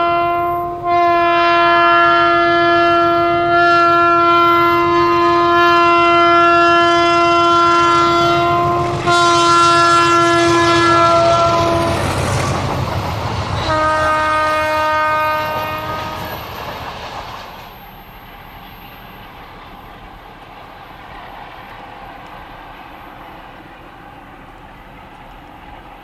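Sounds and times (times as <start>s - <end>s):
train horn blasts: 0.0s - 12.4s, 13.5s - 16.6s
train wheel clatter: 2.9s - 26.0s
locomotive engine rumble: 4.2s - 26.0s.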